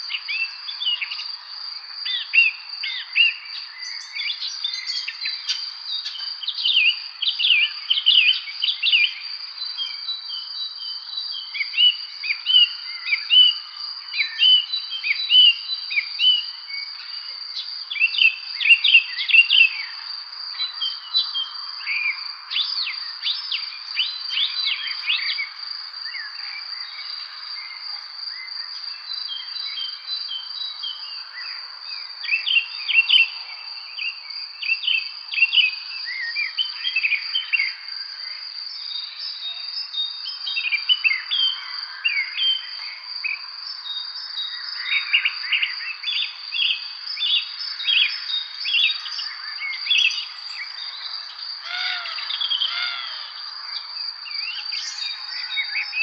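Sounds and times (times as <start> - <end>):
songbirds chirping: 0.0 - 56.0
high insect trill: 16.6 - 56.0.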